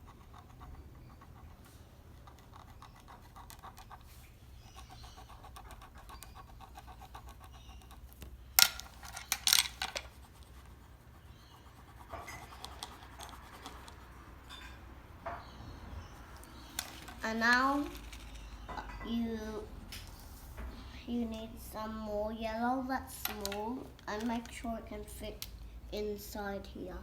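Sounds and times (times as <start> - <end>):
pencil scribbling on paper: 0.0 - 8.2, 10.0 - 14.2
sharp clicks and rustling: 7.8 - 10.5, 16.4 - 19.0, 23.2 - 25.6.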